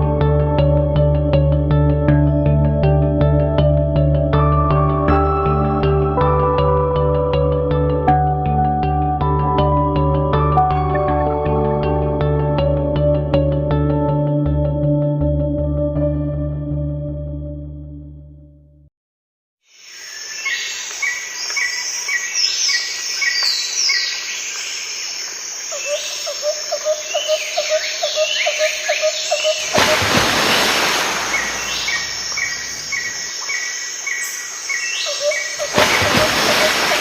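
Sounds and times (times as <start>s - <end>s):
birds chirping and singing: 25.7s - 29.8s, 31.2s - 36.9s.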